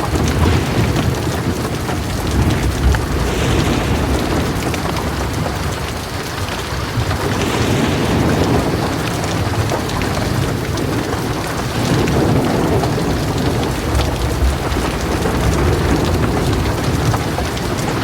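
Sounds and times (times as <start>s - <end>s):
heavy rain falling: 0.0s - 18.0s
low thunder rumbling: 0.0s - 18.0s.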